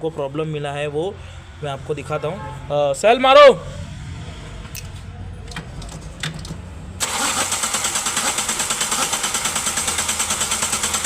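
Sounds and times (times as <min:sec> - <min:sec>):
starter motor cranking engine: 0:05.5 - 0:11.0.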